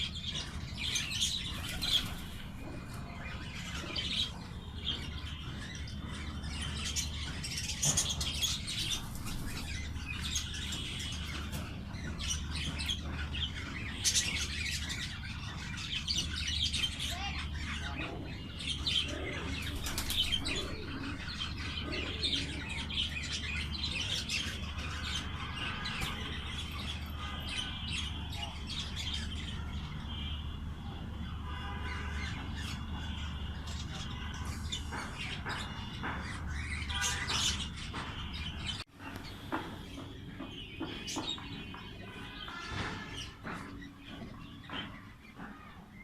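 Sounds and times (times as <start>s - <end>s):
birds chirping in chorus: 0.0s - 30.6s.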